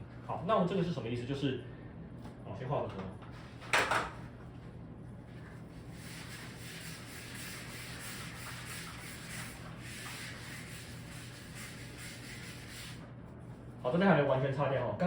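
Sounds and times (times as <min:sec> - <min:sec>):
board eraser scrubbing: 0:05.7 - 0:13.1.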